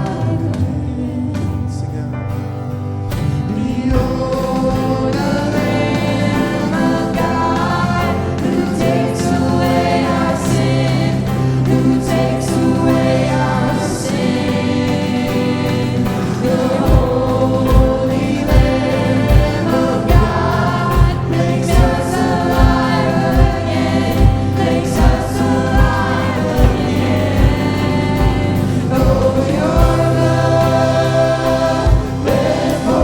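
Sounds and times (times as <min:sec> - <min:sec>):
worship band and singers: 0:00.0 - 0:33.0
kick drum beat: 0:16.1 - 0:33.0.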